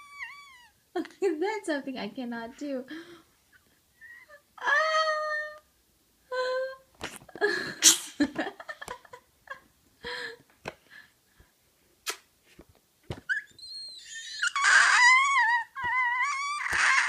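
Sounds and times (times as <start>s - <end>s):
squeaky vocal sounds: 13.3s - 17.0s.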